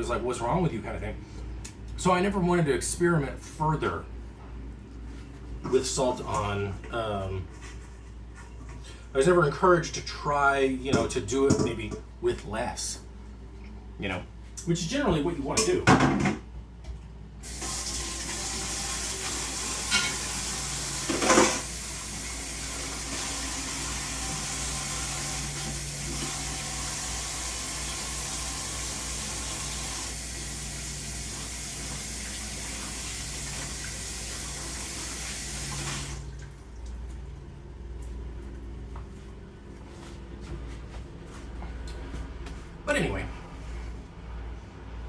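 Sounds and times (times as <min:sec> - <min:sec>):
tap water running into sink: 0:17.4 - 0:37.0.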